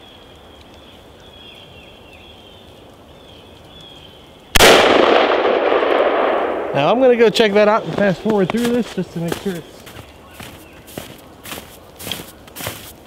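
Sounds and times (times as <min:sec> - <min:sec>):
rifle gunshot: 0:04.6 - 0:06.9.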